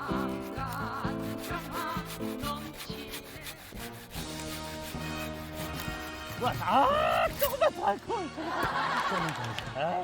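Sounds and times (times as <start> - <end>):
hand saw cutting wood: 0.0 - 7.8
background music: 0.0 - 10.0.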